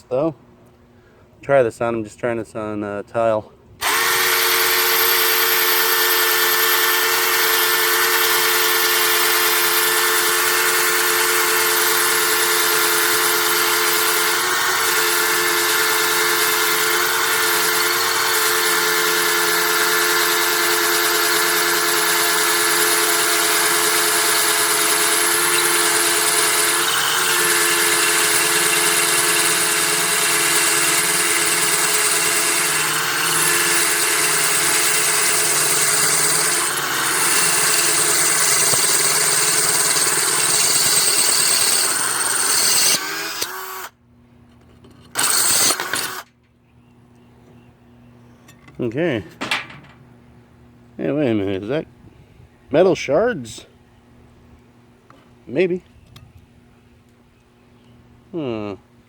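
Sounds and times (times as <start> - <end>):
power drill grinding into tile: 3.8 - 43.9, 45.1 - 46.3.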